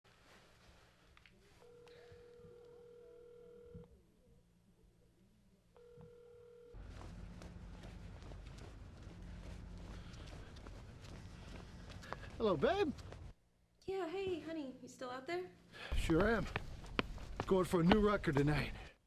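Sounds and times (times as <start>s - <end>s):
telephone ringback tone: 1.6s - 3.8s.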